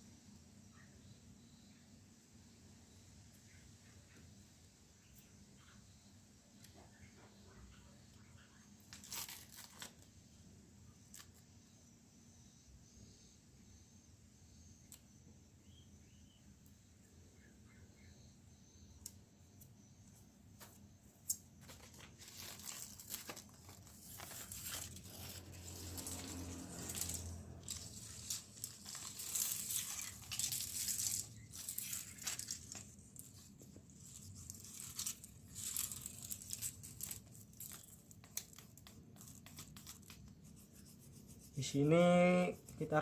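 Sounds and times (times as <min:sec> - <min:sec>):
plastic sheet crinkling: 0:08.9 - 0:10.0, 0:21.6 - 0:40.2.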